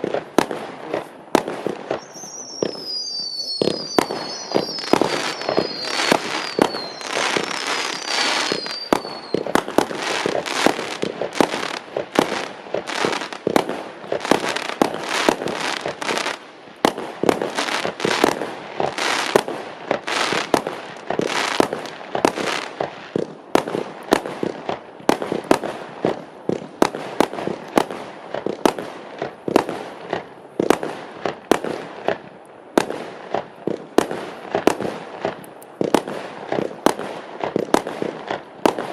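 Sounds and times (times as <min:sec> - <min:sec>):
fireworks launches and bursts: 0:00.0 - 0:38.9
falling fireworks whistles: 0:00.4 - 0:23.3.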